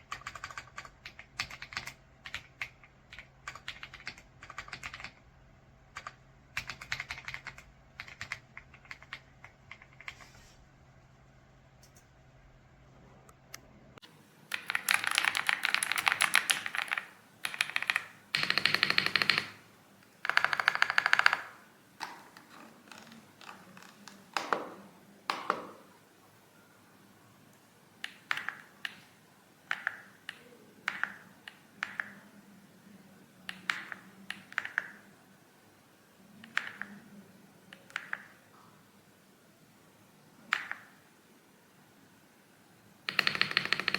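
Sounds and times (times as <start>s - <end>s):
mechanical keyboard typing: 0.0s - 5.2s, 5.9s - 10.2s, 14.5s - 25.8s, 28.0s - 32.3s, 33.5s - 35.1s, 36.4s - 38.4s, 40.5s - 41.0s, 43.1s - 43.9s.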